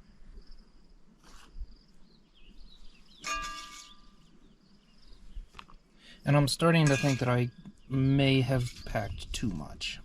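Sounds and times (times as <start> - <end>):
faint bird or insect chirps: 0.0 - 9.7
metal utensil clanging on cookware: 3.2 - 4.0, 6.8 - 7.4.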